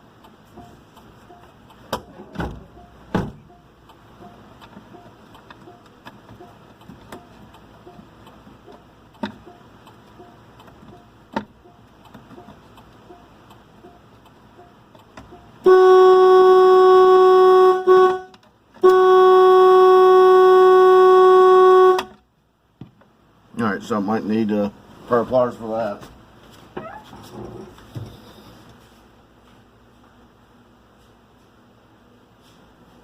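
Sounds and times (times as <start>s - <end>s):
truck horn: 15.6s - 22.2s.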